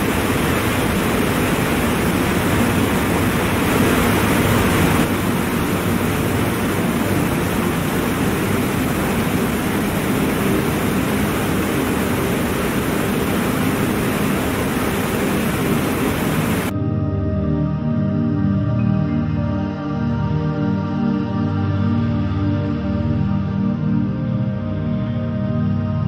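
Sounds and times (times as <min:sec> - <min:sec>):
waterfall rushing: 0:00.0 - 0:16.7.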